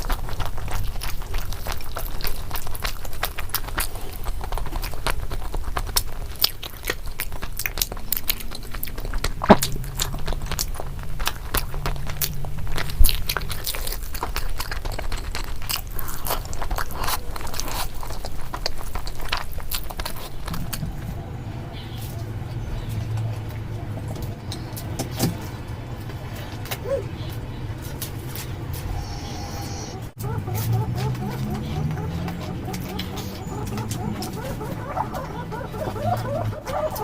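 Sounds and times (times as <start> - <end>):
chewing crisp food crunches: 0.0 - 21.1
low steady hum: 0.0 - 37.0.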